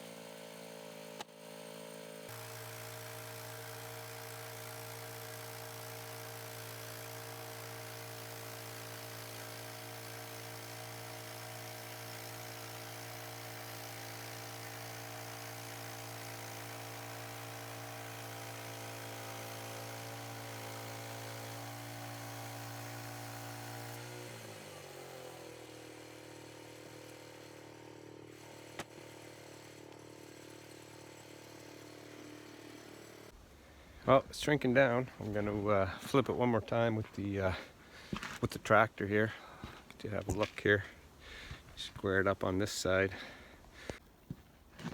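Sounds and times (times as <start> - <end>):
engine running: 9.6 - 38.4.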